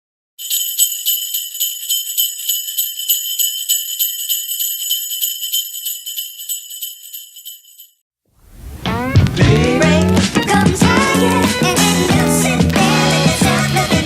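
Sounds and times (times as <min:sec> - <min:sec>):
jingle bells shaken: 0:00.4 - 0:08.0.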